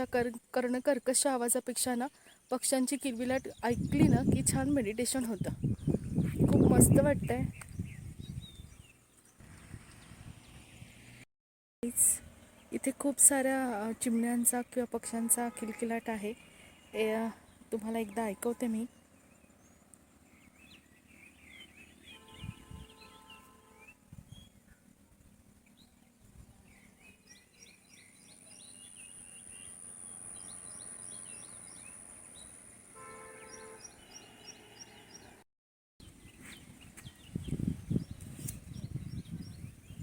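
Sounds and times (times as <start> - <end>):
small birds chirping: 0.0 - 11.2, 11.8 - 32.8, 33.4 - 35.4, 36.0 - 40.0.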